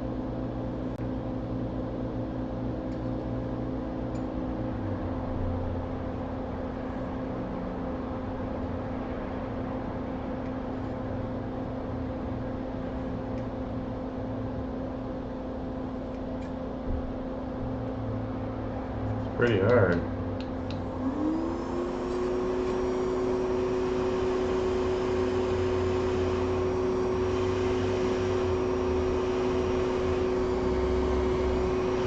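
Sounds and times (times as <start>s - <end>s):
hot air station blowing: 17.1s - 32.0s.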